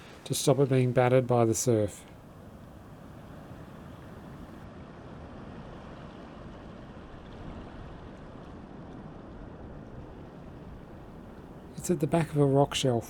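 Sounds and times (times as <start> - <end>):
ocean surf washing: 0.0 - 4.6.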